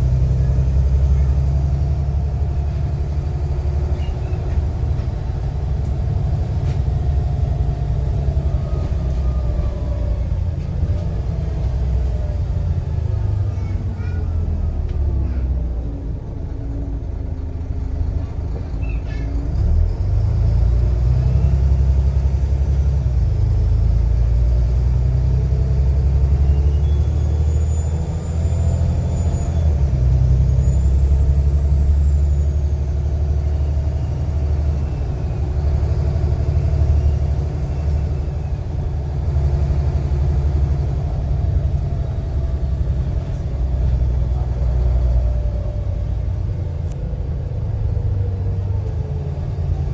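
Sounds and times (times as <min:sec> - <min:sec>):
bus diesel engine under load: 0:00.0 - 0:49.9
faint turbo whistle: 0:26.4 - 0:28.4.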